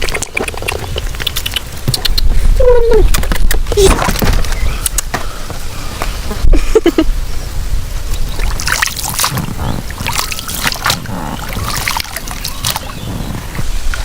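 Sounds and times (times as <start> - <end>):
oars splashing in water: 8.2 - 14.0.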